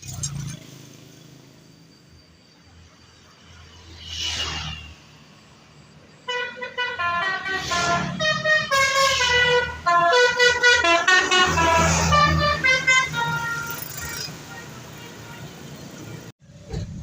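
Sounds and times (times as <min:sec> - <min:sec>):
bus engine running: 0:06.2 - 0:17.0
bus horn playing a tune: 0:06.3 - 0:15.6.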